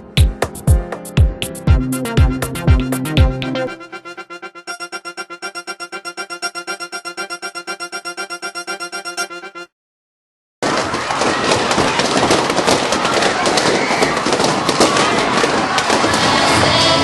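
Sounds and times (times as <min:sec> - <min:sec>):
rapid sharp pops and cracks: 0:10.6 - 0:16.5
loud crowd noise: 0:10.6 - 0:17.0.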